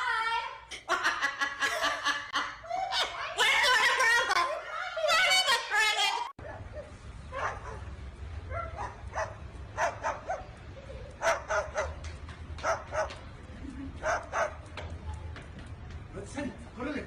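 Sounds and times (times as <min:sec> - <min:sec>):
dog yapping: 0:08.5 - 0:10.6, 0:11.2 - 0:12.0.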